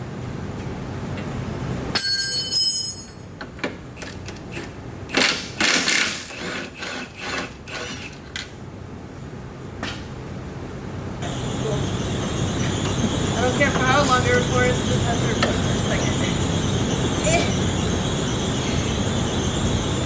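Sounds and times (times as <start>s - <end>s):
high ringing tone: 2.0s - 3.2s, 11.2s - 20.0s.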